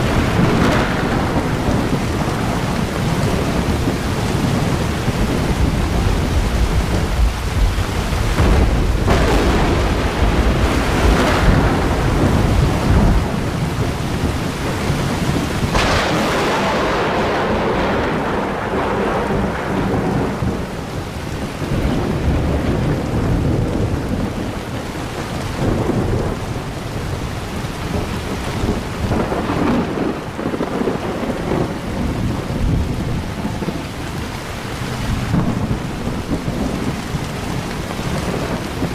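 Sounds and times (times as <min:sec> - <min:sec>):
sharp thunderclap: 0:00.0 - 0:27.2, 0:27.8 - 0:34.0, 0:35.0 - 0:38.9
heavy rain: 0:00.0 - 0:38.9
thunder rumbling: 0:00.0 - 0:38.9.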